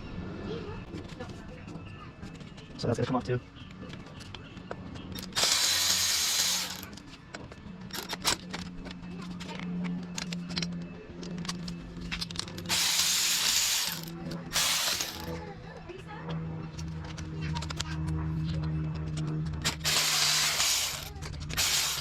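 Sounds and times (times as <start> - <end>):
clicks of tools and parts: 3.9 - 15.4, 19.1 - 22.0
power tool spinning bolts: 5.2 - 7.0, 12.4 - 15.4, 19.6 - 22.0.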